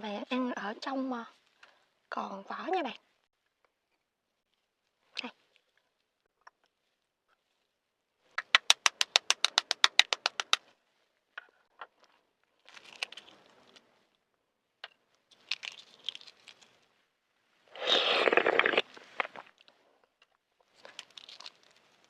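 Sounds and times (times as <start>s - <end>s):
egg shell crackling: 8.4s - 10.6s, 12.7s - 13.4s, 15.3s - 16.8s, 17.8s - 19.6s, 20.8s - 21.8s.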